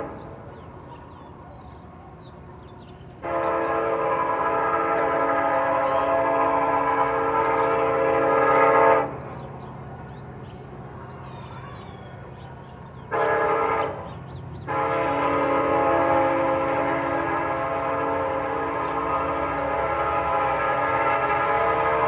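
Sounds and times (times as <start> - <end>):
low rumble of train running: 0.0 - 22.0
train horn chord blasts: 3.2 - 9.5, 13.0 - 22.0.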